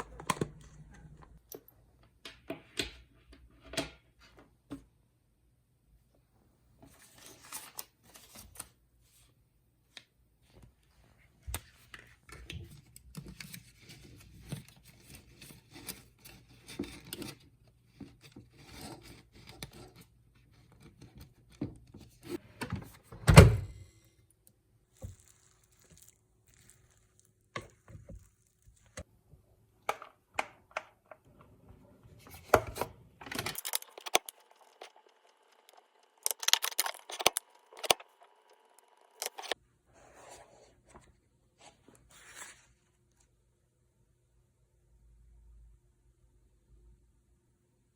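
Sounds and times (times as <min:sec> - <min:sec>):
rustling: 0:24.9 - 0:29.0.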